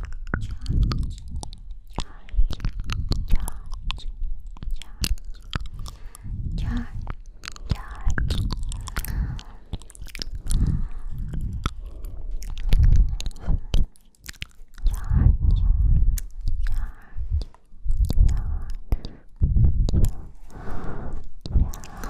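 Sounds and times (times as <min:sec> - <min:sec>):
wet lip clicks: 0:00.0 - 0:20.8, 0:21.4 - 0:22.0
breath puffs on microphone: 0:18.2 - 0:22.0.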